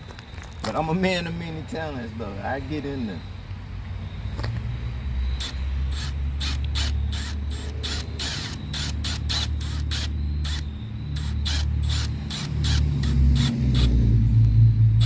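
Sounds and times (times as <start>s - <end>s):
low hum: 3.2s - 15.0s.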